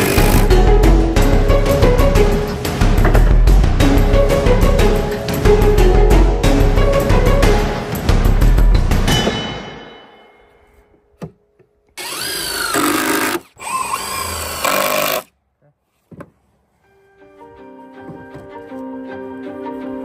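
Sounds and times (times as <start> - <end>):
power tool whining: 0.0 - 0.5, 12.0 - 15.3
background music: 0.0 - 12.5, 16.6 - 20.0.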